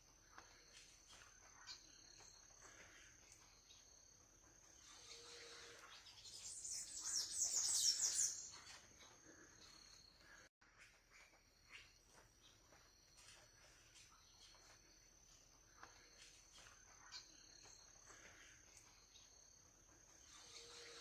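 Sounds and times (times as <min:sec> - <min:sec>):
bird chirps: 0:04.8 - 0:10.2.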